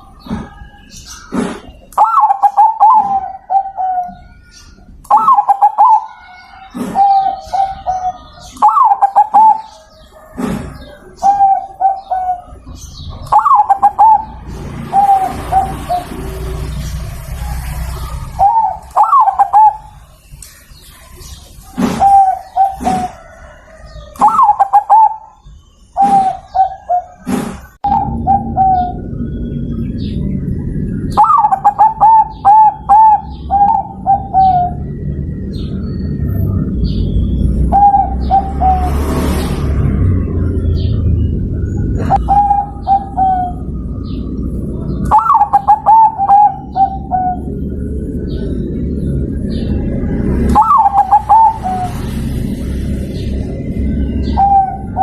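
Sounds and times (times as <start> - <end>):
dove cooing: 0.0 - 16.7, 17.3 - 20.1, 21.6 - 25.4, 26.0 - 29.4, 30.0 - 35.7, 37.6 - 38.9, 41.9 - 52.1, 53.2 - 55.0
noise: 0.0 - 55.0
short noisy rustle: 27.2 - 27.8.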